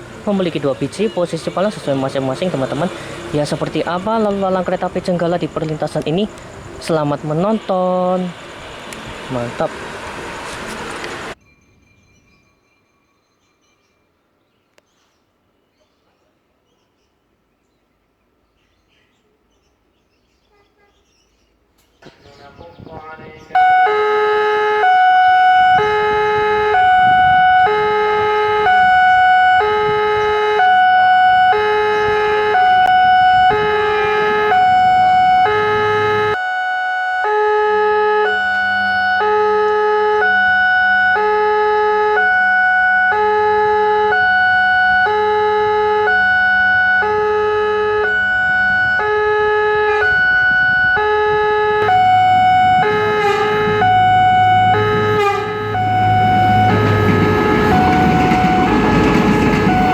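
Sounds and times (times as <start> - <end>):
level crossing alarm tones: 0.0 - 8.6, 23.5 - 59.9
low engine rumble: 0.0 - 11.4, 22.0 - 36.4, 37.5 - 59.9.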